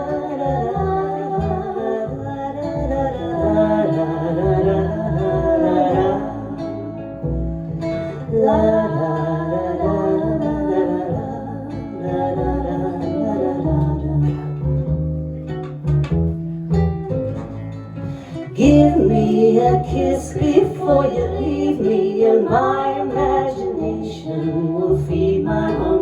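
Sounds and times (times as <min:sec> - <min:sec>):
acoustic guitar strumming: 0:12.7 - 0:26.0.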